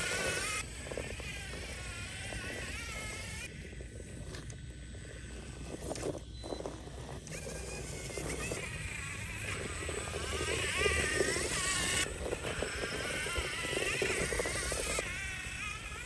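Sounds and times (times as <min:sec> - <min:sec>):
electric motor and gears whining: 0:00.0 - 0:16.0
tyres crunching over rock: 0:05.2 - 0:15.3.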